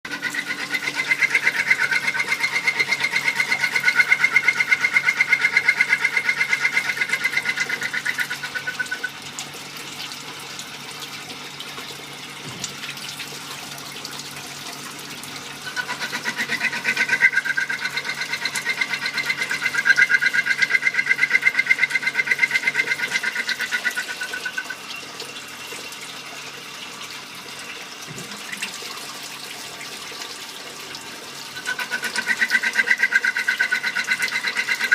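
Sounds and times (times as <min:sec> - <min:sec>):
steady machine noise: 0:00.1 - 0:09.2, 0:15.3 - 0:25.0, 0:31.5 - 0:34.9.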